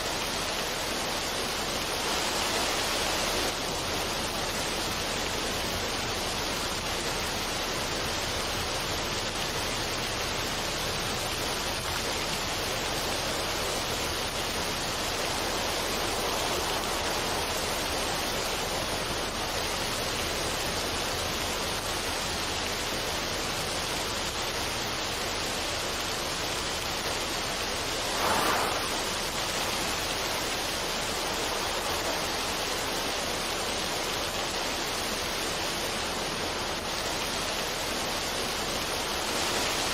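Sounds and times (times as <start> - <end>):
water pouring over rocks: 0.0 - 39.9
water splash: 27.0 - 34.0.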